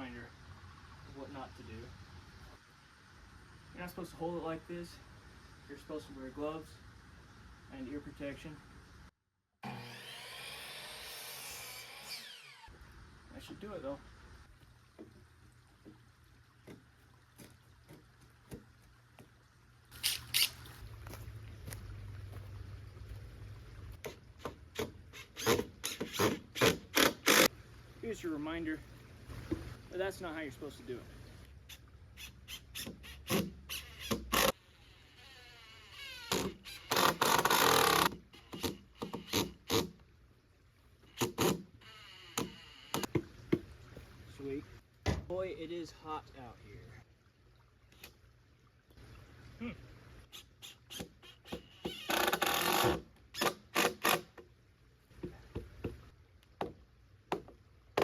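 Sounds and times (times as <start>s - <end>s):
loud rasping noises: 24.0s - 27.5s, 31.7s - 40.0s, 41.0s - 43.1s, 50.3s - 54.4s
tool rasping on wood: 24.8s - 27.5s, 36.3s - 39.9s.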